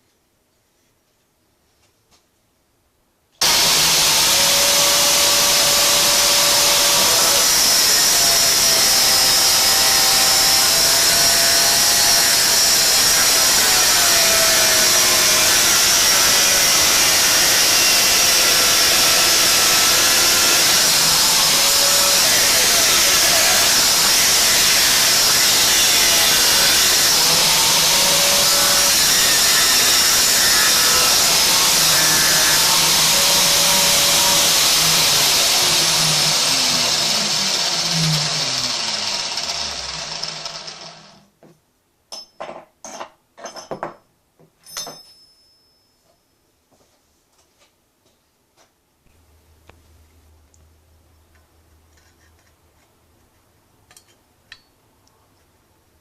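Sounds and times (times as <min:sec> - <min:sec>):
angle grinder running: 0:03.4 - 0:41.2.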